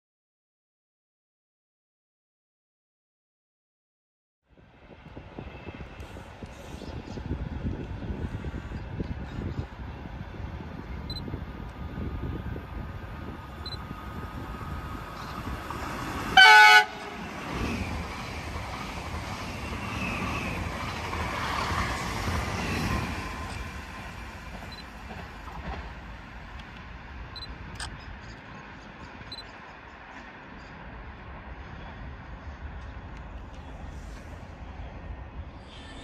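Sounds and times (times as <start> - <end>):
train passing: 4.5 - 36.0
train horn blast: 16.4 - 17.2.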